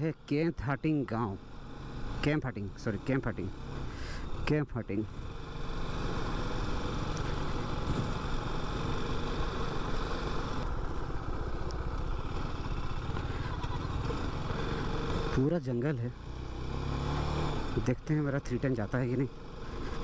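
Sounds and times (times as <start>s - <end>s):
motorcycle engine running: 5.0s - 20.0s.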